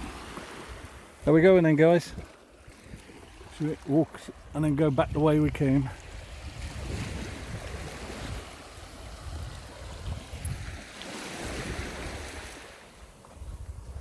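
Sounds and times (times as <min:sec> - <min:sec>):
sea waves washing onto beach: 0:00.0 - 0:14.0
wind rumbling on microphone: 0:04.2 - 0:14.0.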